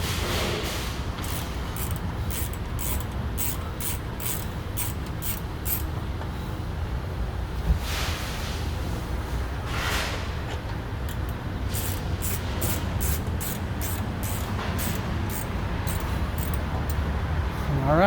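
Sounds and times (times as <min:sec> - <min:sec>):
screwdriver scraping strokes: 0:01.2 - 0:05.9, 0:11.1 - 0:17.0.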